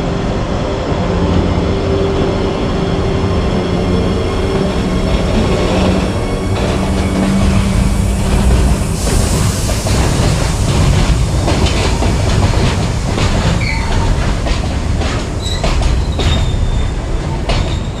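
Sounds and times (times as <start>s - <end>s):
locomotive rumbling: 0.0s - 18.0s
wheels clattering over rail joints: 4.9s - 18.0s.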